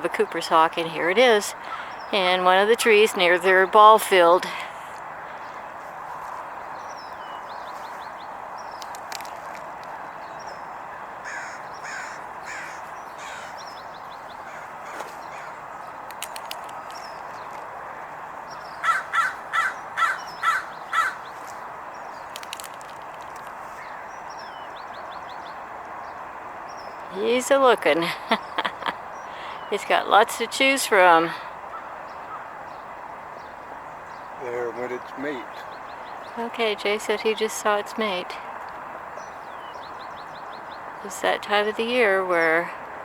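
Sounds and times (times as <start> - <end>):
faint songbird chirps: 0.1 - 27.5, 28.1 - 42.6
bird harsh calls: 1.3 - 2.4, 9.9 - 17.6, 18.5 - 27.2, 31.4 - 38.2.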